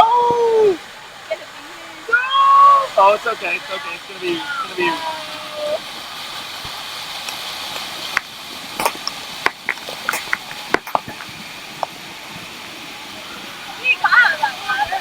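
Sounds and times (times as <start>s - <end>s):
waterfall rushing: 0.0s - 15.0s
sharp splashes and knocks: 5.3s - 13.2s.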